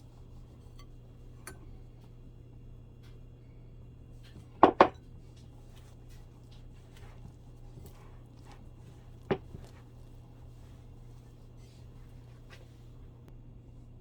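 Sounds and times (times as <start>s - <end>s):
low steady hum: 0.0s - 14.0s
utensils knocking against a dish: 4.6s - 5.0s.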